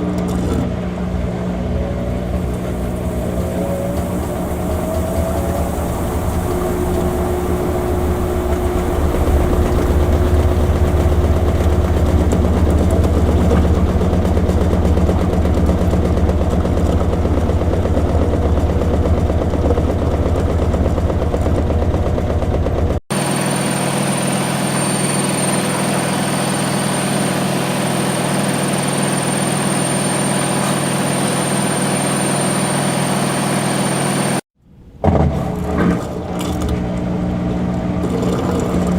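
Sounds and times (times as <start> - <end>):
washing machine motor hum: 0.0 - 34.4, 35.4 - 38.9
thin high whine: 0.6 - 14.7, 23.2 - 34.4.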